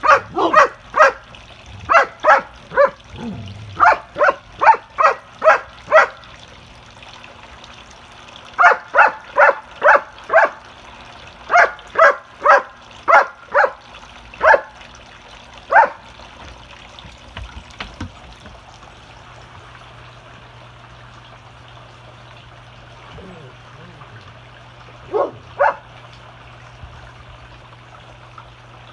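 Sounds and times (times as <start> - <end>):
dog barking: 0.0 - 3.2, 3.8 - 6.2, 8.6 - 10.6, 11.5 - 13.8, 14.4 - 14.8, 15.7 - 16.0, 25.0 - 25.9.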